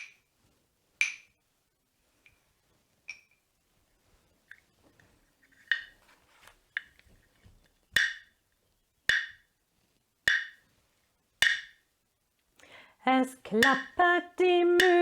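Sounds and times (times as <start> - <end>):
wood block clacks: 0.0 - 0.2, 1.0 - 1.4, 3.1 - 3.4, 5.6 - 6.0, 7.9 - 8.4, 9.1 - 9.5, 10.3 - 10.6, 11.4 - 11.8, 13.6 - 14.0, 14.8 - 15.0.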